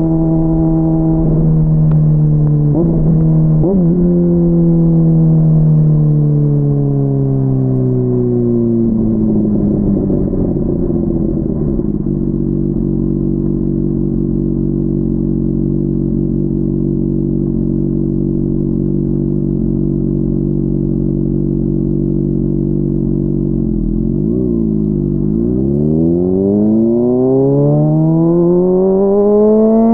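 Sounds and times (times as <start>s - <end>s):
muffled motorcycle engine idling: 0.0s - 25.8s.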